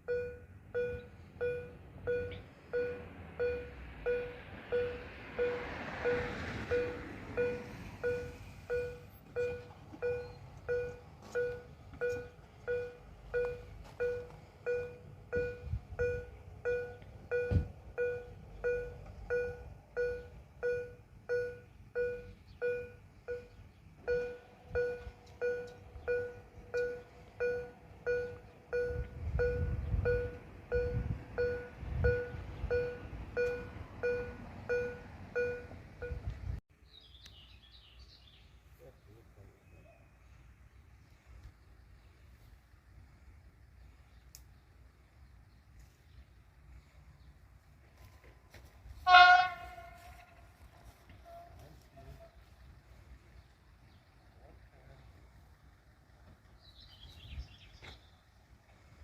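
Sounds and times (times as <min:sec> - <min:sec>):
level crossing warning bell ringing: 0:00.0 - 0:36.3.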